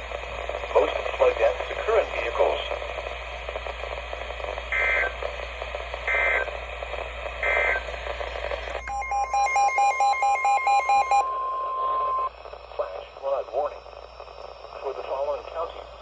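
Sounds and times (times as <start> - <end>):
radio receiver hiss: 0.0 - 8.9, 11.3 - 16.0
alert data bursts: 8.8 - 12.3
rapidly pulsing low beep: 8.8 - 12.3.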